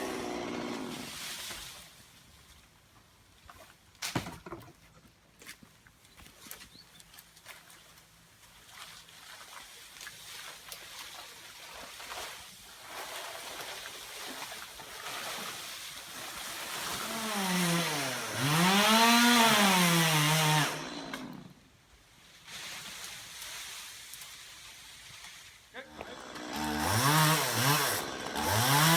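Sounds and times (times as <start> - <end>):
chainsaw revving: 0.0 - 1.2, 16.7 - 21.6, 25.9 - 28.9.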